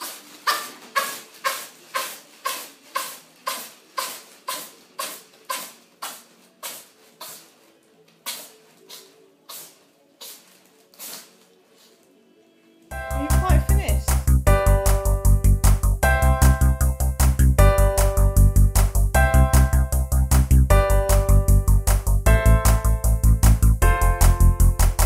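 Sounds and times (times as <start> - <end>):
cat sneezing: 0.5 - 7.5.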